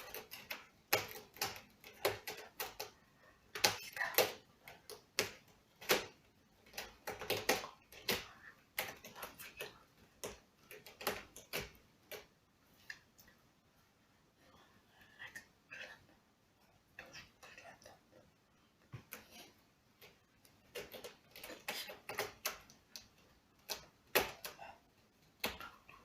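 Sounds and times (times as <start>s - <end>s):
sharp clicks and light knocks: 0.0s - 13.4s, 18.8s - 26.0s.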